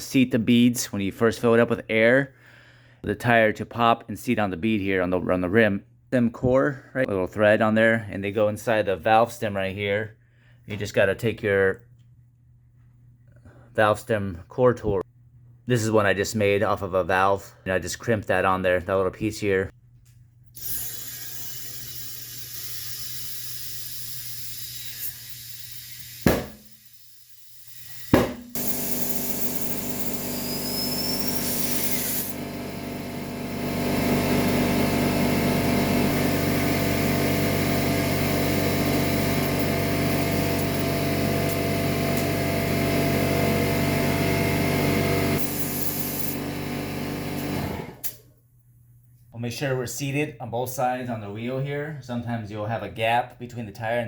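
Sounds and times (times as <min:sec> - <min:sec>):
air compressor motor running: 0:20.6 - 0:48.2.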